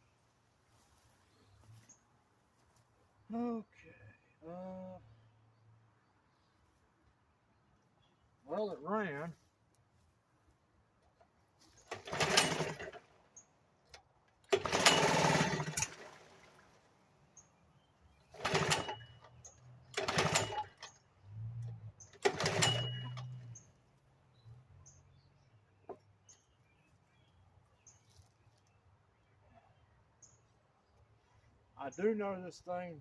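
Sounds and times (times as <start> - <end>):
outboard motor pull-starting: 11.8 - 13.2, 14.4 - 16.7, 18.3 - 23.6.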